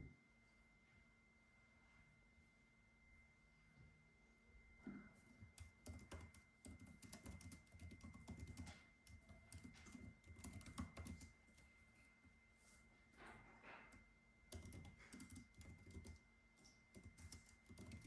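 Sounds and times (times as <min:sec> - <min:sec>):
faint high whine: 0:00.0 - 0:18.0
keyboard typing: 0:05.4 - 0:11.7, 0:13.9 - 0:18.0.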